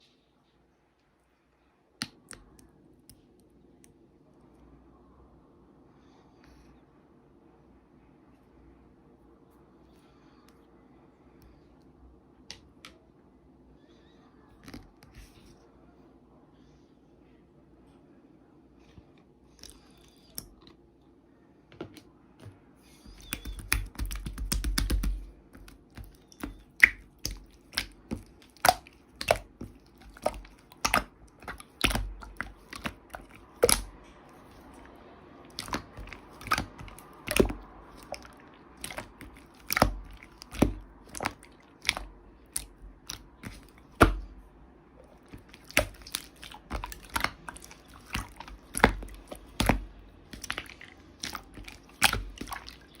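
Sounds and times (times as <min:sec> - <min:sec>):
slime clicking and popping: 0:23.1 - 0:33.9, 0:35.5 - 0:44.3, 0:45.3 - 0:52.9.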